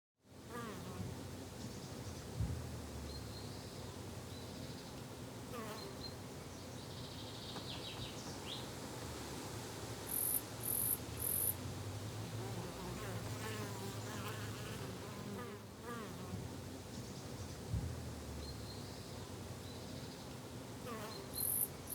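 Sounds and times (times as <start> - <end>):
insect buzzing: 12.4 - 16.5, 20.8 - 21.9.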